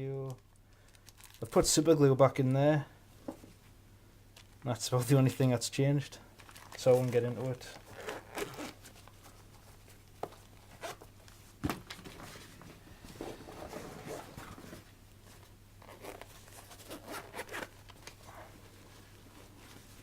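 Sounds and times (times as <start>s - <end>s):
rustling: 6.4s - 20.0s
zipper on a pouch: 7.8s - 8.9s, 13.2s - 14.8s, 15.8s - 18.7s.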